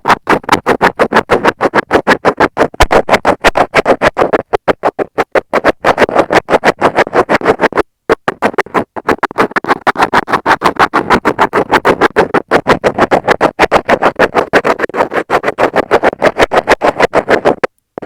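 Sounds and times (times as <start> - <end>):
tweezers scratching on microphone: 0.0 - 18.0.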